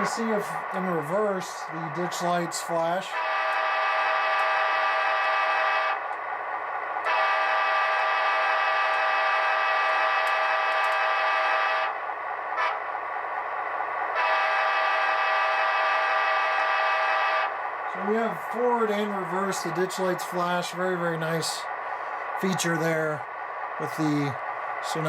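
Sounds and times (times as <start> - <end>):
faint diesel engine sound: 0.0 - 25.0
diesel locomotive horn blasts: 3.1 - 6.0, 7.0 - 12.0, 14.1 - 17.5.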